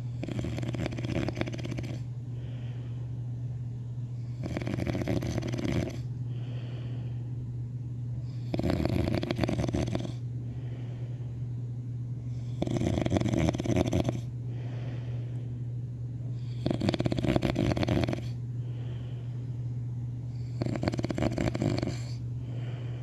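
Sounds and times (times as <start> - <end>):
rattling snores: 0.0 - 2.1, 4.2 - 6.1, 8.3 - 10.2, 12.4 - 14.3, 16.4 - 18.4, 20.4 - 22.2
soft breathing: 1.4 - 3.4, 5.2 - 7.6, 9.6 - 11.6, 14.2 - 16.8, 17.6 - 20.9, 21.5 - 23.0.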